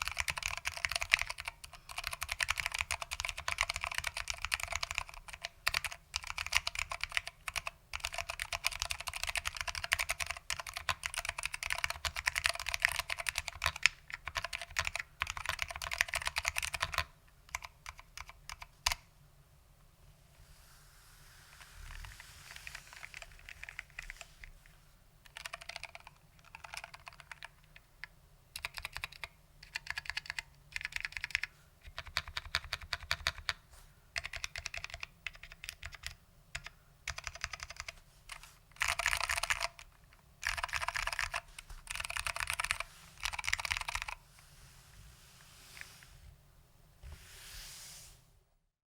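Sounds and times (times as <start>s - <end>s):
mechanical keyboard typing: 0.0s - 19.0s, 22.6s - 24.2s, 25.2s - 33.6s, 34.2s - 44.2s.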